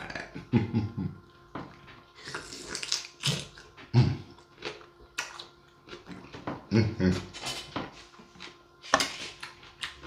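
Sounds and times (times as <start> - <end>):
chewing and lip-smacking: 1.7 - 6.6.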